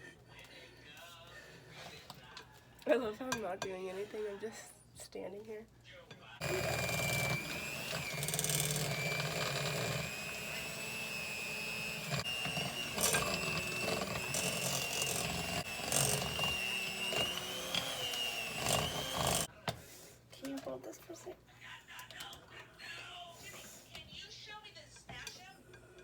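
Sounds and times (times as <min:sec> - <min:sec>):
electric mixer motor whining: 0:06.4 - 0:19.5.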